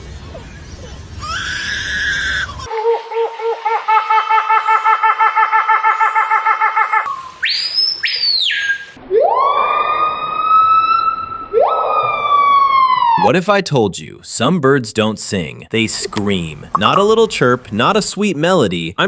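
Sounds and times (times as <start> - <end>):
rapid run of pitched calls: 7.1 - 9.0
shrill high whistle: 7.1 - 12.1
siren-like wail: 7.1 - 13.2.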